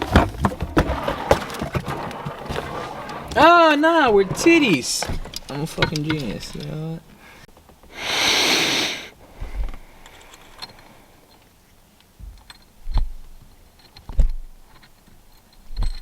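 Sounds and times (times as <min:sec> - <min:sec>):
tools knocking and clicking: 0:05.0 - 0:06.8
short hiss: 0:07.9 - 0:09.2.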